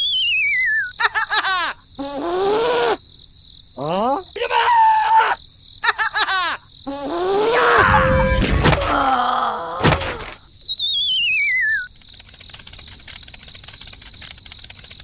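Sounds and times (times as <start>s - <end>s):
crickets chirring: 0.0s - 15.0s
short wailing sound effect: 7.5s - 10.4s
thunk: 8.2s - 9.1s, 9.8s - 10.4s.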